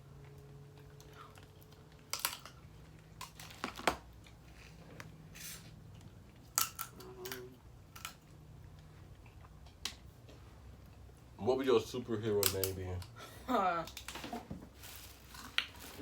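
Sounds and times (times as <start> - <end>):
shell clicks and snaps: 1.7 - 2.6, 12.4 - 13.1.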